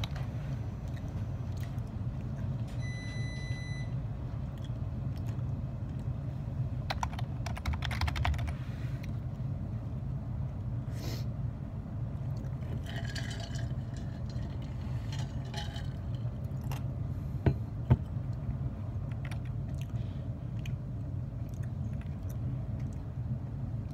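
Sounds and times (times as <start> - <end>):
low hum: 0.0 - 7.5
typing on keyboard: 6.9 - 8.6.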